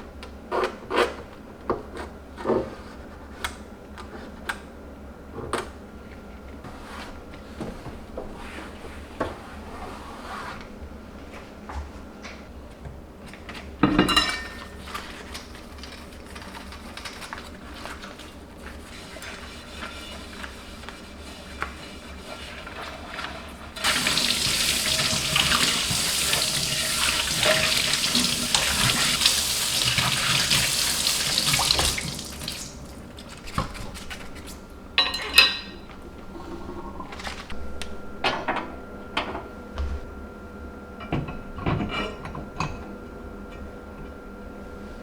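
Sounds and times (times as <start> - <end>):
dishes and utensils clinking: 13.8 - 14.8, 23.8 - 30.8, 35.0 - 35.9
tap running into a sink: 23.8 - 33.8.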